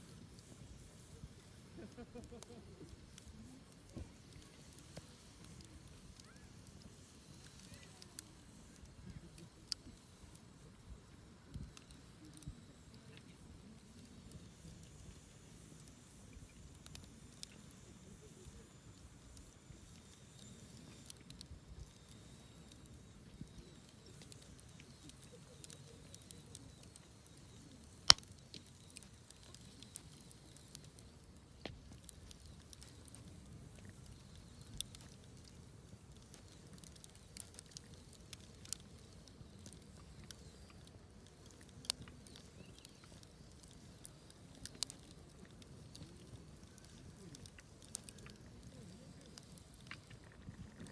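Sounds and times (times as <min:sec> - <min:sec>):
campfire crackling: 0:00.0 - 0:50.9.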